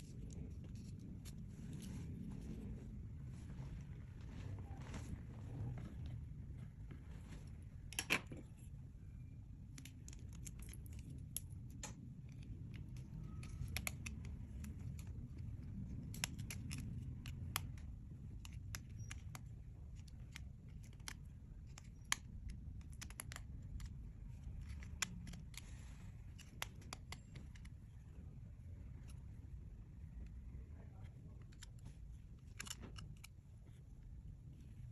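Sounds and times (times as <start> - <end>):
low hum: 0.0 - 34.9.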